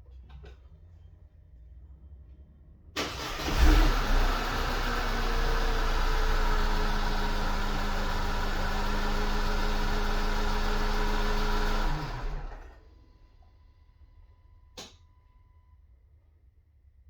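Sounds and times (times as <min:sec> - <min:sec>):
car engine idling: 0:03.2 - 0:12.6
engine running down: 0:03.2 - 0:12.8.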